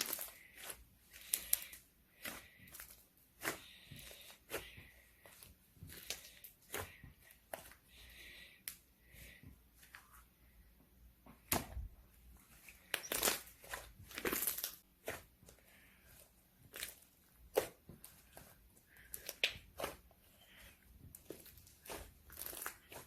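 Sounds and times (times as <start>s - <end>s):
slime popping and crackling: 0.0s - 2.9s, 12.9s - 14.8s, 21.2s - 23.0s.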